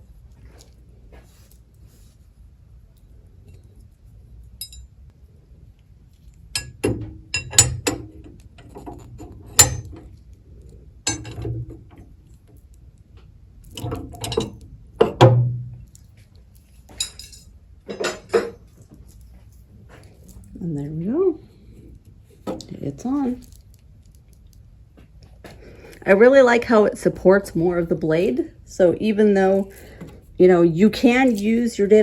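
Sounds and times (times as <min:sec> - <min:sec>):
metal nut clinking on saw arbor: 0:06.6 - 0:10.0.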